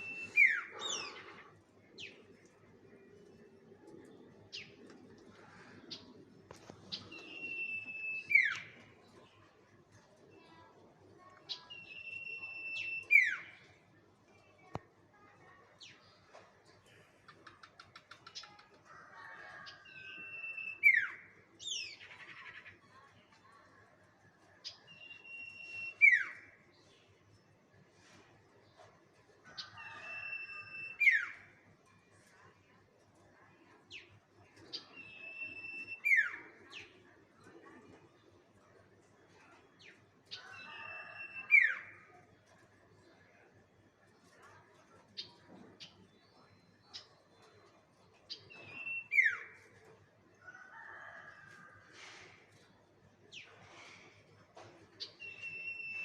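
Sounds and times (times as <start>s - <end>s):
bird lure whistle call: 7.2s - 8.6s, 55.2s - 56.0s
bird lure call whistles: 55.2s - 56.0s.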